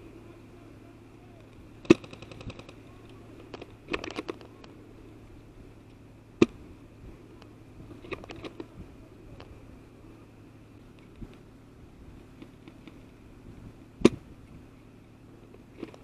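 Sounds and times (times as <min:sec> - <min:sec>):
airsoft automatic fire bursts: 0:01.8 - 0:02.8.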